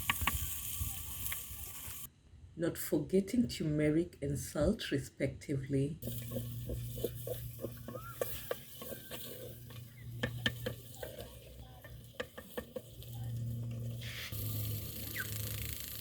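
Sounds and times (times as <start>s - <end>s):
onions frying with sizzle: 0.0s - 2.1s, 6.0s - 16.0s
steady low hum: 6.0s - 16.0s
utensil scraping a pot: 6.0s - 16.0s.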